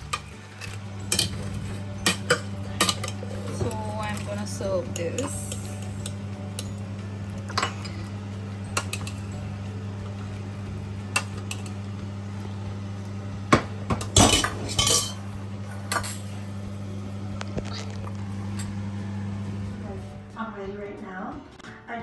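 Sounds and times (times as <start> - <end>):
dishes clattering: 0.0 - 10.3, 11.1 - 11.8, 13.5 - 16.5
steady low hum: 0.6 - 20.4
spoon clinking against bowl: 14.1 - 15.2.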